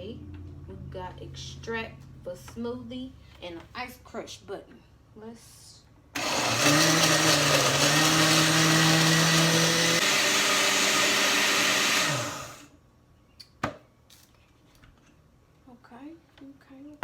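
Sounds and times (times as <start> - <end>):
blender motor running: 6.2 - 12.7.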